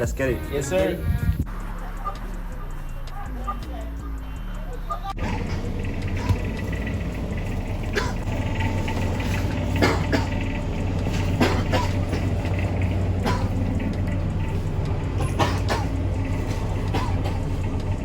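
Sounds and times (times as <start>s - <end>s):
vehicle rumble: 0.0s - 18.0s.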